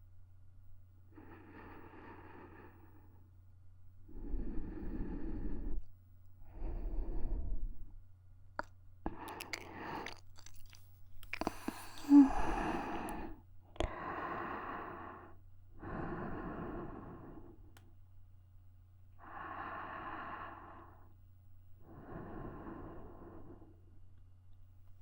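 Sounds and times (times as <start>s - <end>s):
low steady hum: 0.0s - 25.0s
woman breathing softly: 1.1s - 3.3s, 4.0s - 8.0s, 9.1s - 17.8s, 19.2s - 21.2s, 21.8s - 23.9s
mouth clicks: 8.6s - 14.1s.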